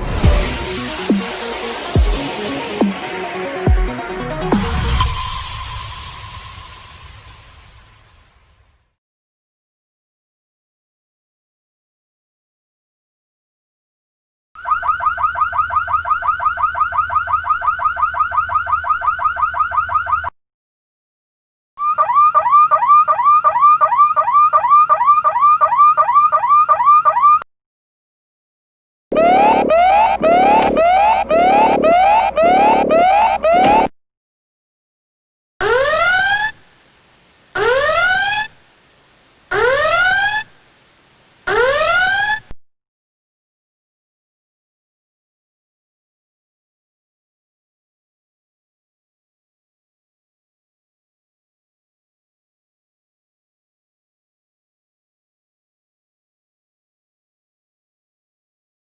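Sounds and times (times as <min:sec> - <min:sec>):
electronic whoop alarm: 0:14.6 - 0:20.3, 0:29.1 - 0:33.9
electronic alarm warbling: 0:29.1 - 0:33.9.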